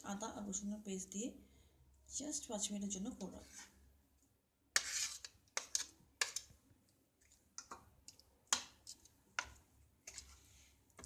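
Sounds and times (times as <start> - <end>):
utensil scraping a bowl: 3.3 - 3.8, 4.8 - 6.5, 8.8 - 10.5.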